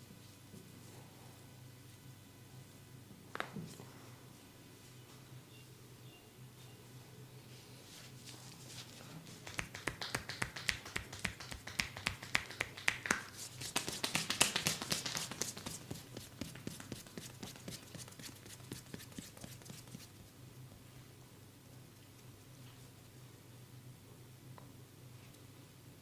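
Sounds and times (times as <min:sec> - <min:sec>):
hand strikes of percussive massage: 0:09.4 - 0:20.0.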